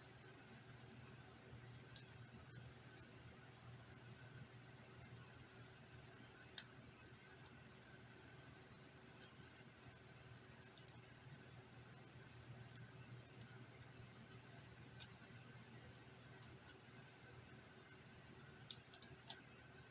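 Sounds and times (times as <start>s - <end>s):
low steady hum: 0.0s - 19.9s
small parts clicking and tapping: 1.8s - 3.3s, 4.1s - 4.4s, 5.0s - 5.6s, 6.2s - 11.1s, 11.9s - 19.6s.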